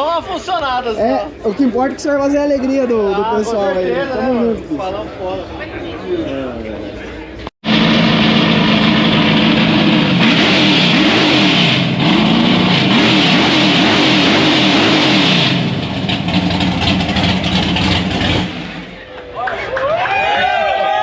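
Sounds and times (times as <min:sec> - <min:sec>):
car engine revving: 0:07.6 - 0:19.0.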